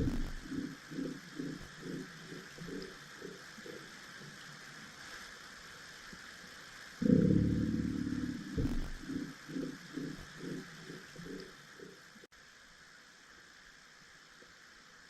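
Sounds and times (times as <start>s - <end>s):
low rapid underwater pulsing: 0.0s - 12.3s
low underwater rumble: 7.0s - 11.4s.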